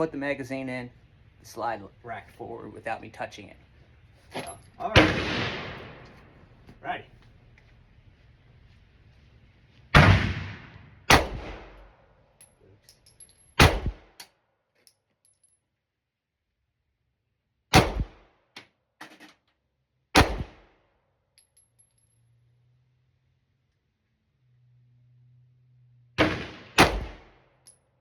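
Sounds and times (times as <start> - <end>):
pistol shots: 4.9 - 6.3, 10.0 - 11.9, 13.6 - 14.1, 17.7 - 18.2, 20.2 - 20.7, 26.2 - 27.4.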